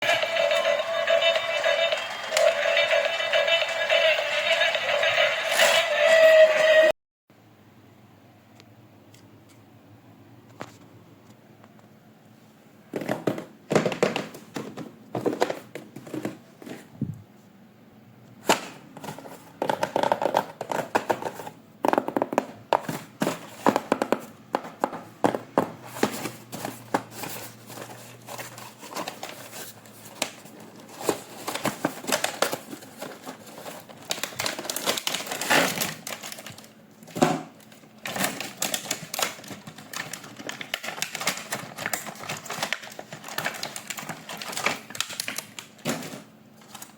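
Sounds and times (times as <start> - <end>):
plastic and cardboard crinkling: 13.0 - 17.0, 18.9 - 46.9.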